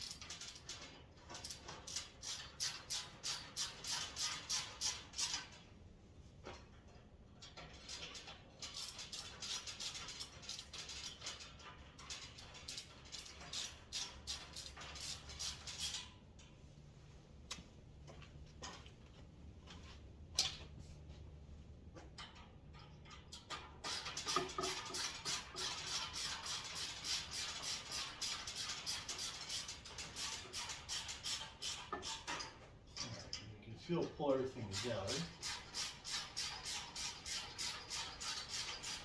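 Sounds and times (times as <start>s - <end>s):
hand ratchet clicking: 0.0s - 5.6s, 7.6s - 16.1s, 23.1s - 32.6s, 34.7s - 39.0s.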